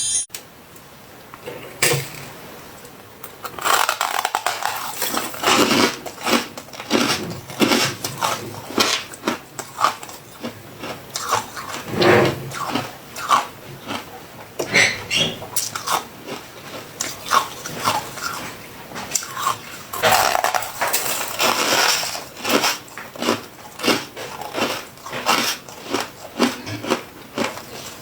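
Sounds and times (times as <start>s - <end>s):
crunching of freezer frost: 3.4s - 11.9s, 19.1s - 28.0s.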